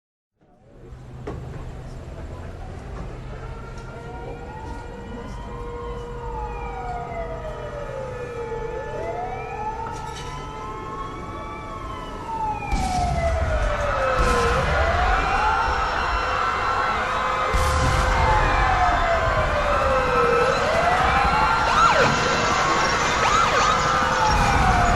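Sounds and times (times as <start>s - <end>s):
air-raid siren wailing: 2.2s - 24.9s
low rumble: 12.7s - 24.9s.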